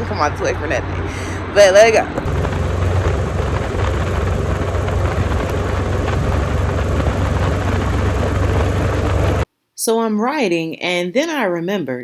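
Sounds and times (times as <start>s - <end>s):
motorcycle engine rumbling: 0.0s - 9.4s
wind and road noise: 0.0s - 9.4s.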